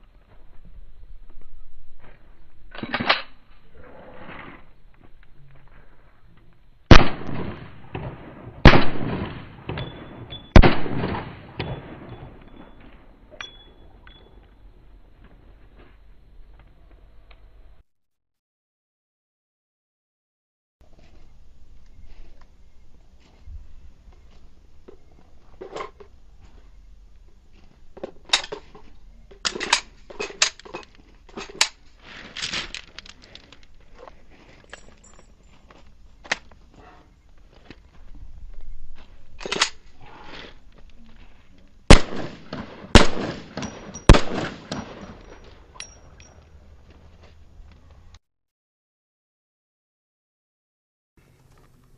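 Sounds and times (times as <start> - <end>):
handgun shots echoing: 6.9 - 12.2, 41.9 - 46.0
handgun metallic clicks: 29.4 - 31.8, 39.4 - 39.8.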